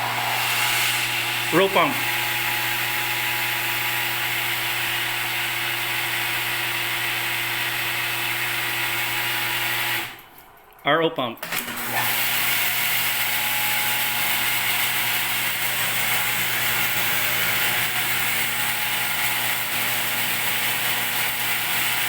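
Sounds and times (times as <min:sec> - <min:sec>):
loud hiss: 0:00.0 - 0:02.4
pump motor humming: 0:00.0 - 0:10.2, 0:11.4 - 0:22.0.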